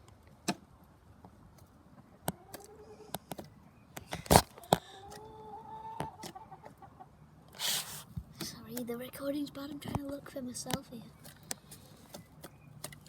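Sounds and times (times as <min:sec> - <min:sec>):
chickens pecking and scuffling: 0:00.0 - 0:13.0.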